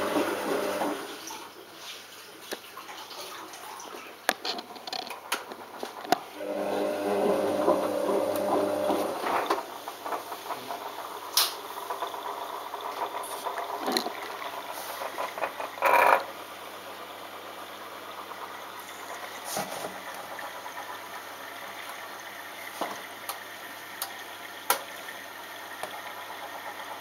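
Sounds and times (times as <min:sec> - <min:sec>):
water rushing: 0:00.0 - 0:01.5, 0:06.3 - 0:27.0
washing machine motor hum: 0:00.0 - 0:01.8, 0:05.1 - 0:27.0
small clicks and knocks: 0:04.3 - 0:06.2.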